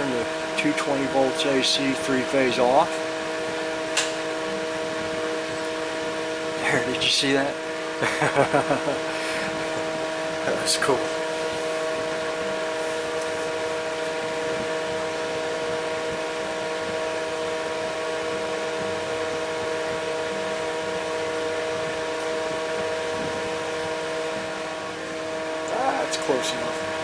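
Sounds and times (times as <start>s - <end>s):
electrical equipment humming: 0.0s - 27.0s.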